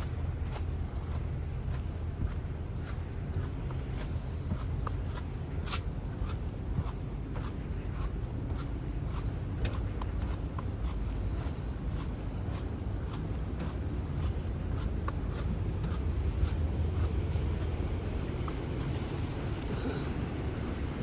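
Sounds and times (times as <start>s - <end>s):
scratchy scrapes: 0.0s - 20.0s
steady low rumble: 0.0s - 21.0s.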